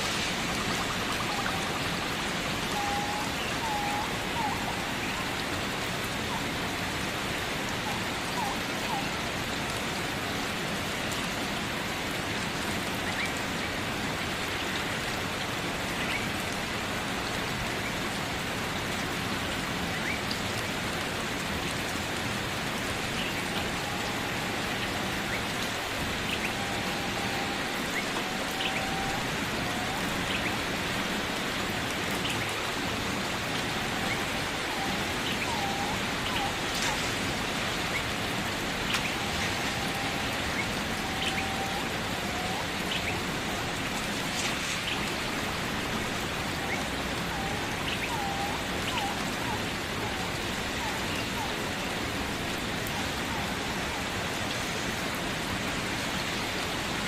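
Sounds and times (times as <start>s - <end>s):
steady rain falling: 0.0s - 57.0s.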